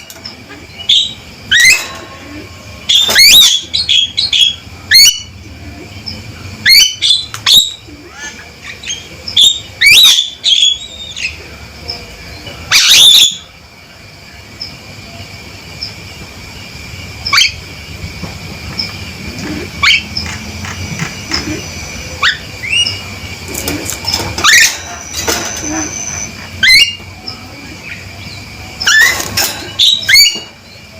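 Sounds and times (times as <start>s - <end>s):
bird giving harsh calls: 0.5s - 5.3s, 18.8s - 23.4s, 24.1s - 27.0s.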